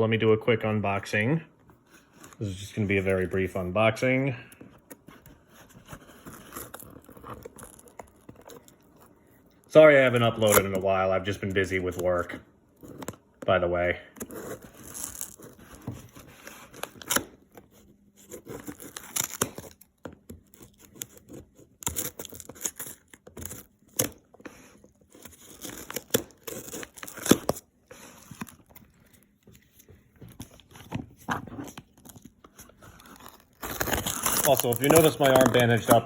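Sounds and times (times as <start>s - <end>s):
packaging tearing and crinkling: 5.8s - 9.0s, 14.2s - 17.5s, 18.2s - 29.0s, 31.6s - 36.0s.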